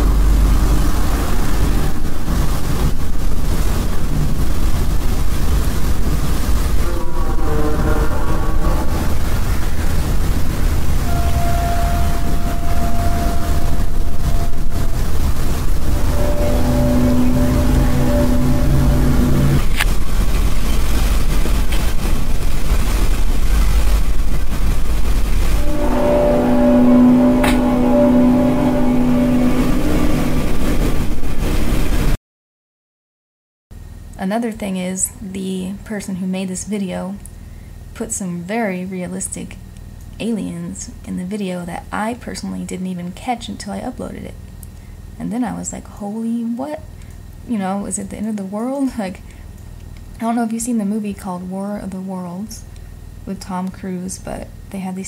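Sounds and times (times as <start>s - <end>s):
deep rumbling drone: 0.0s - 32.2s.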